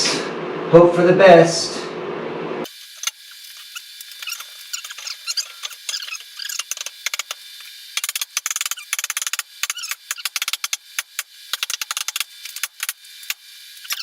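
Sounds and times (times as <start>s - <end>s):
metal squeaking and scraping in wood: 3.6s - 7.4s, 8.4s - 10.6s, 13.8s - 14.0s.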